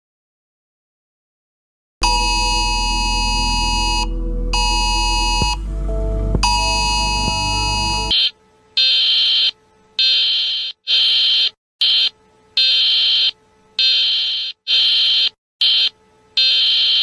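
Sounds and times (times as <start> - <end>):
buzzy emergency alert beeps: 2.0 - 9.5.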